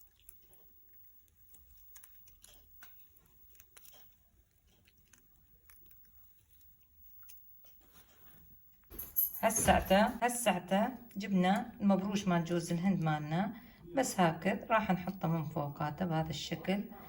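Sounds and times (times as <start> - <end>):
pastry crackling and ticking: 0.0 - 7.8.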